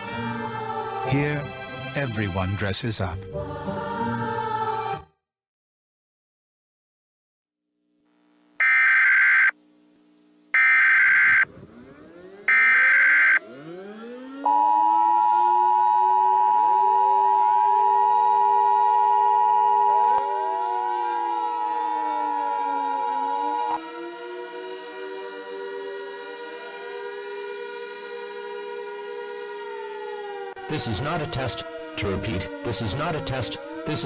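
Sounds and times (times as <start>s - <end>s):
digital header data tones: 8.6s - 9.5s, 10.6s - 11.4s, 12.5s - 13.4s
two-tone alert signal: 8.6s - 9.5s, 10.6s - 11.5s, 12.5s - 13.6s
air-raid sirens winding up: 8.6s - 9.6s, 10.6s - 25.2s, 29.8s - 34.0s.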